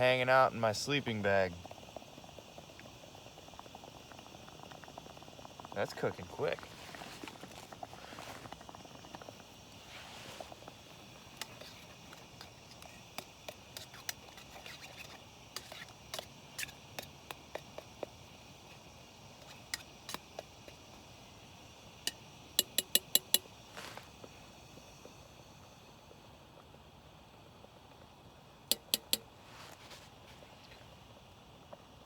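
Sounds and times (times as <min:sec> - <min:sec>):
utensil scraping in a pot: 0:05.8 - 0:20.9, 0:22.1 - 0:24.3, 0:28.7 - 0:31.0.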